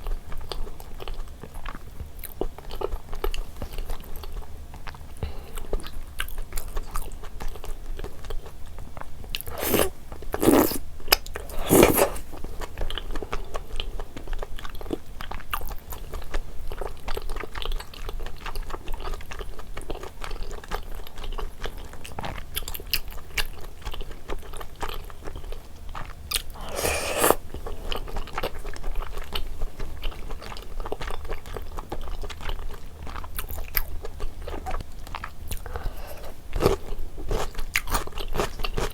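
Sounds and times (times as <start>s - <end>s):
person chewing food: 0.0s - 38.9s
wet mouth clicks: 9.4s - 12.2s, 26.6s - 27.4s.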